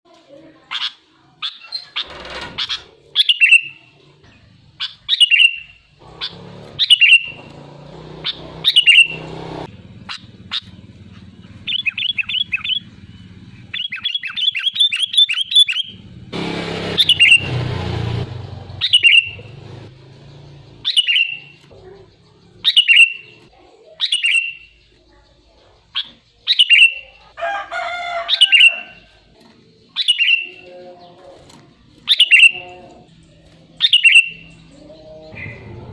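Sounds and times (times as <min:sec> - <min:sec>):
bird calling sharp notes: 0:00.7 - 0:03.9, 0:04.8 - 0:18.0, 0:18.7 - 0:19.7, 0:20.8 - 0:23.4, 0:25.9 - 0:29.1, 0:30.0 - 0:31.4, 0:32.0 - 0:33.1, 0:33.8 - 0:35.8.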